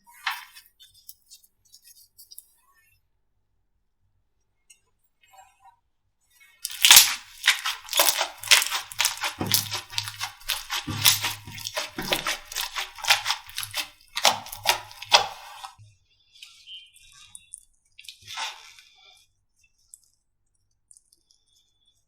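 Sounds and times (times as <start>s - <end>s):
slime crackling and popping: 6.6s - 15.8s.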